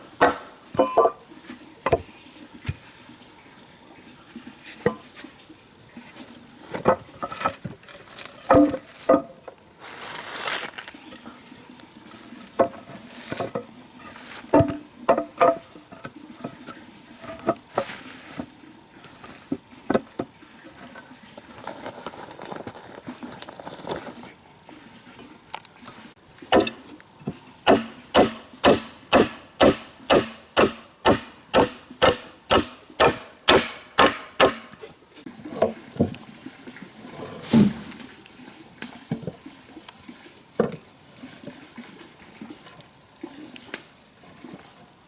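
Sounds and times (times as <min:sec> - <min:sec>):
hand tool striking wood: 0:00.2 - 0:01.2, 0:08.5 - 0:09.3, 0:26.5 - 0:26.9, 0:27.7 - 0:34.9.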